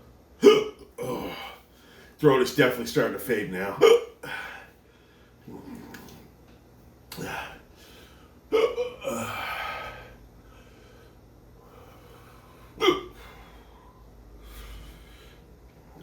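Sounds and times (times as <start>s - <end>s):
man hiccuping: 0.4s - 1.6s, 3.7s - 4.5s, 8.5s - 9.5s, 12.8s - 13.3s.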